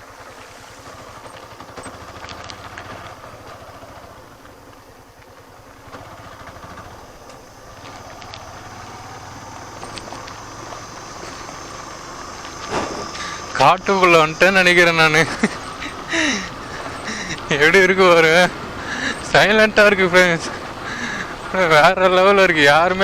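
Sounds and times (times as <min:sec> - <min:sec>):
motorcycle engine running: 0:00.0 - 0:23.0.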